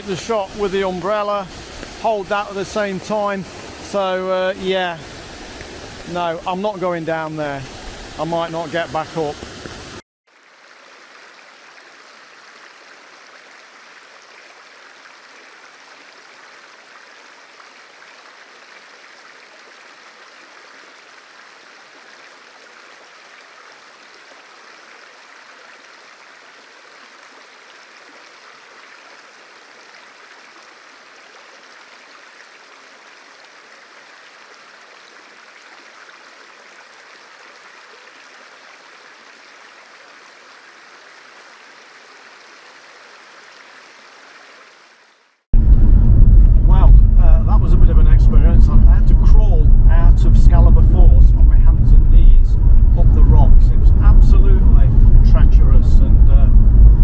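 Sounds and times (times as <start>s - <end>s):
waterfall rushing: 0.0s - 10.0s.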